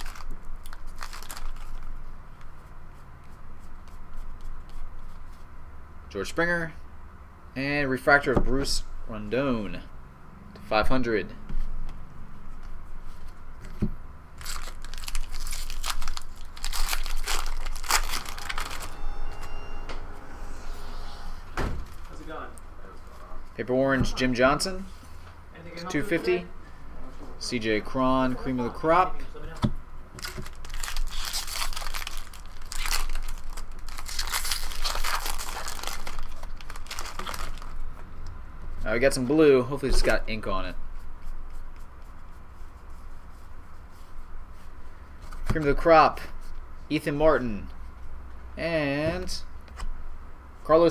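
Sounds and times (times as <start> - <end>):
wrapper crinkling and tearing: 0.0 - 2.0, 14.4 - 19.0, 30.2 - 37.9.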